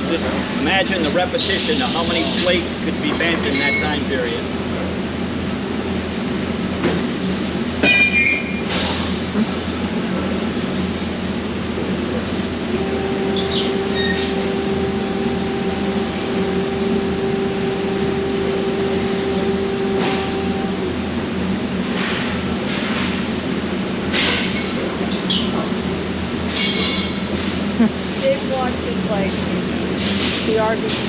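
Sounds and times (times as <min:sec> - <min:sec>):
industrial machinery noise: 0:00.0 - 0:31.0
steady hum: 0:00.0 - 0:31.0.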